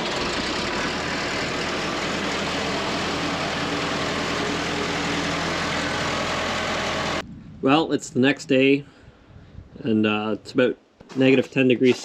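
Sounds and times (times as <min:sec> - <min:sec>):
diesel compressor engine idling: 0:00.0 - 0:07.2.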